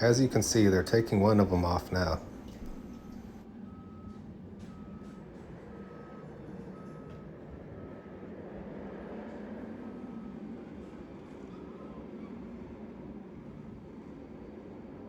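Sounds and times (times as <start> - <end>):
backup alarm beeping: 0.0 - 8.1
diesel engine rumble: 0.0 - 11.4.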